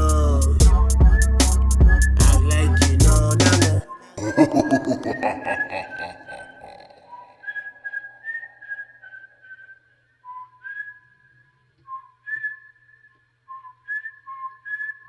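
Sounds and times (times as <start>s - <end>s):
person whistling: 0.0s - 4.2s, 7.1s - 12.9s.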